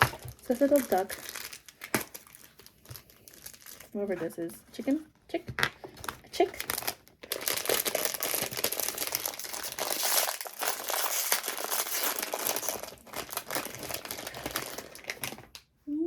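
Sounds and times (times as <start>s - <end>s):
plastic wrapping crinkling: 0.0s - 4.9s, 5.7s - 15.6s.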